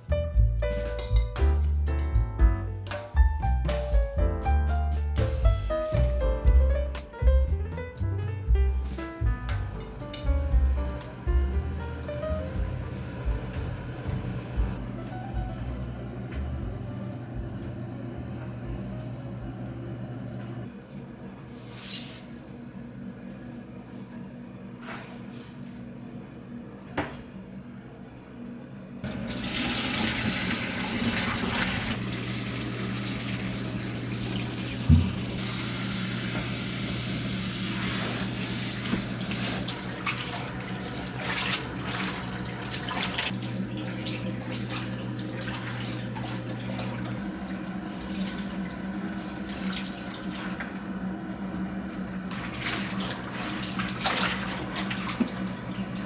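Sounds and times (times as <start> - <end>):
tap running into sink: 29.1 - 43.4.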